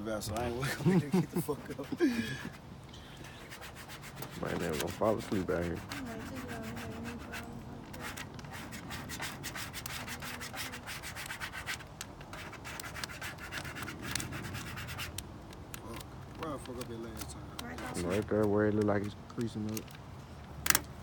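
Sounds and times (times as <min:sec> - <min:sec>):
rubbing strokes on car panel: 0:03.2 - 0:15.2.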